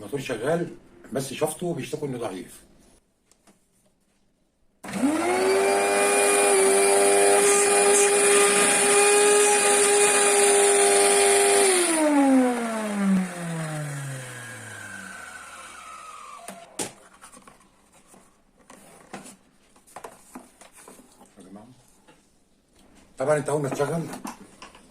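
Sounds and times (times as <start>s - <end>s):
vacuum cleaner motor whine: 4.8s - 16.8s.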